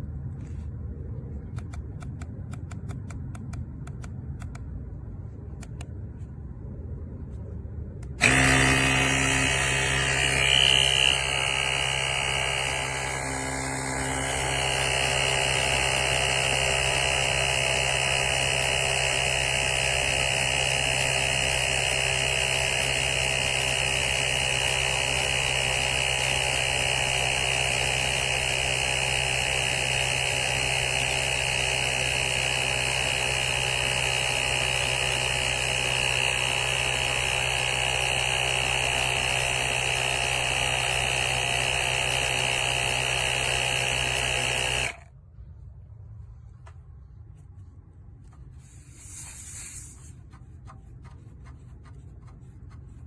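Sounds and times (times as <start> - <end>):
small air compressor buzzing: 8.0 - 45.1, 48.2 - 50.2.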